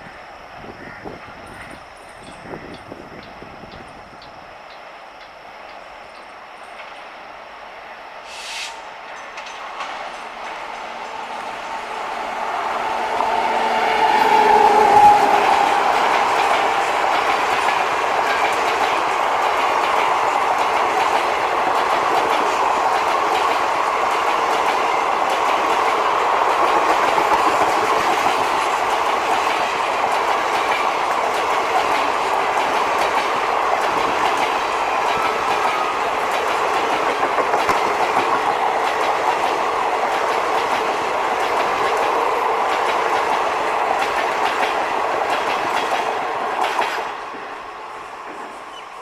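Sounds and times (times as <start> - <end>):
train wheels rushing on rails: 0.0 - 49.0
clickety-clack over rail joints: 9.1 - 11.9, 12.7 - 47.6, 48.2 - 48.8.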